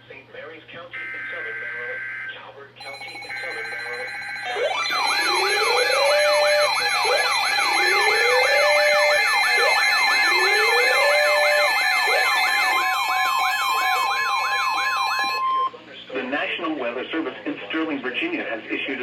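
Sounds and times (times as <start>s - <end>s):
electronic siren yelp: 1.0s - 15.8s
siren wail: 2.8s - 15.8s
steady beep tone: 2.8s - 15.8s
steady high tones: 2.8s - 15.8s.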